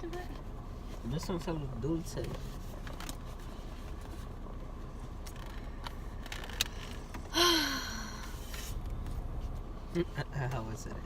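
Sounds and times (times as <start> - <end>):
low background hum: 0.0 - 11.0
person sighing: 7.3 - 8.4.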